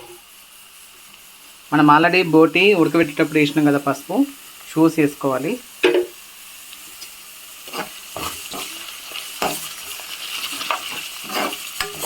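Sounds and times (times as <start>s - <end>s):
onions sizzling in hot oil: 0.0s - 12.0s
spoon scraping a pan: 7.0s - 12.0s.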